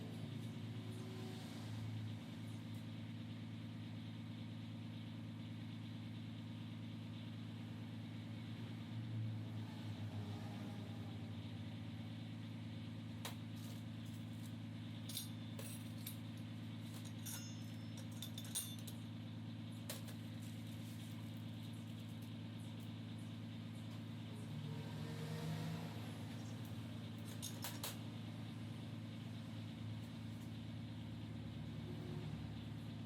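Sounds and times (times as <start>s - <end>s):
low machine hum: 0.0s - 33.0s
metal parts clinking: 15.1s - 16.3s, 16.9s - 19.0s, 27.2s - 28.0s.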